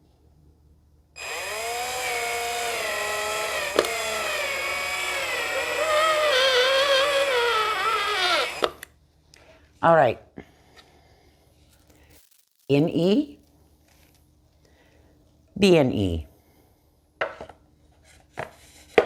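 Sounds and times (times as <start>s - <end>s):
cordless drill whining: 1.2s - 8.9s.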